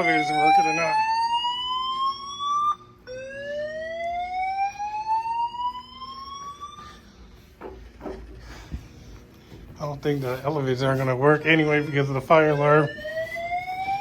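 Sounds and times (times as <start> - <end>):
fire alarm rising whoop: 0.0 - 7.1, 12.4 - 14.0.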